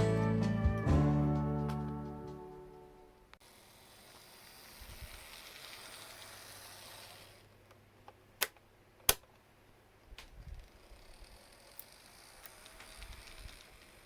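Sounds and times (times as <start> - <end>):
sharp mechanism clicks: 10.2 - 14.0.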